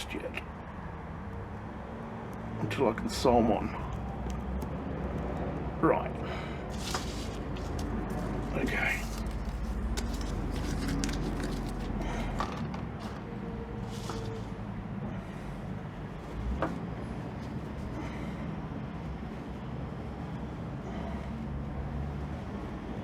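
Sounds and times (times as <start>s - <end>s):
steady low hum: 5.7s - 23.0s
cloth and velcro rustling: 6.7s - 12.4s.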